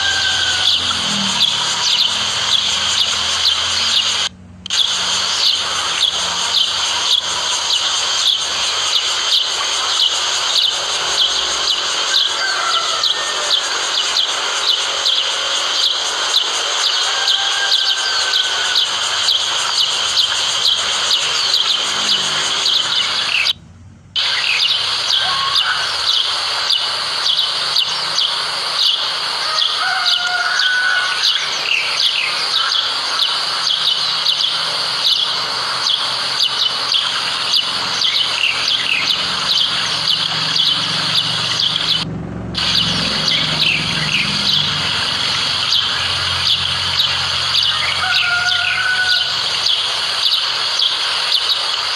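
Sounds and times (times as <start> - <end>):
lower whistled notes: 0.0 - 23.6
birds chirping rapidly: 0.0 - 51.9.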